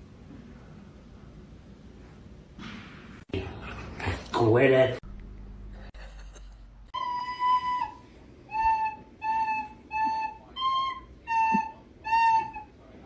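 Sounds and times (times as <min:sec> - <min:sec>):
high whistle-like notes: 0:07.0 - 0:12.9.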